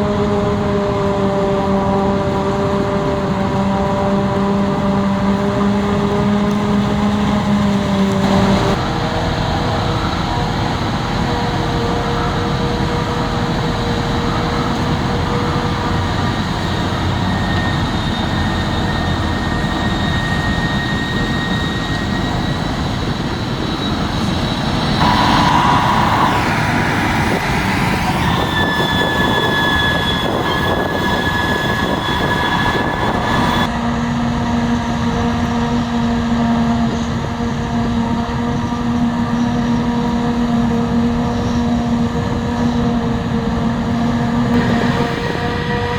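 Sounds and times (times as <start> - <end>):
diesel farm machinery running: 0.0 - 45.9
loud rushing: 24.4 - 33.7.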